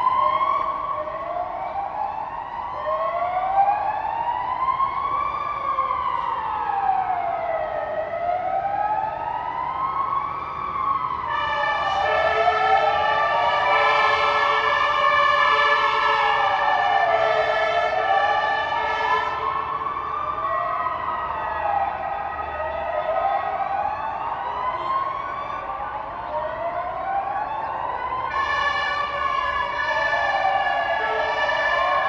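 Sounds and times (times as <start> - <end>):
fire engine siren wailing: 0.0 - 32.0
many-toned horn blare: 11.3 - 14.7, 15.4 - 16.2, 17.2 - 18.1, 18.7 - 19.5.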